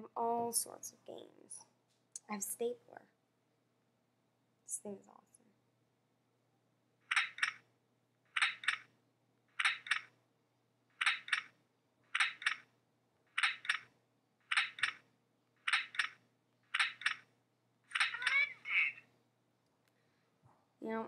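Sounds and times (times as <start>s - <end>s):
stapler click-clack sound effect: 7.1s - 7.6s, 8.4s - 8.9s, 9.6s - 10.1s, 11.0s - 11.5s, 12.2s - 12.6s, 13.4s - 13.9s, 14.5s - 15.0s, 15.7s - 16.2s, 16.8s - 17.2s.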